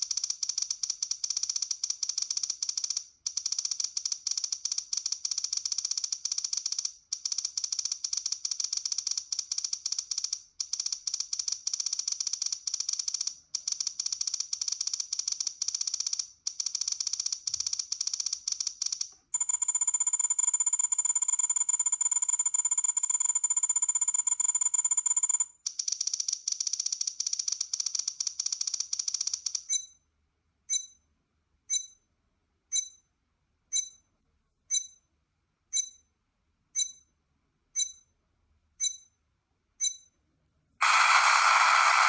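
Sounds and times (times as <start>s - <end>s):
short electronic beeps: 19.4s - 25.5s.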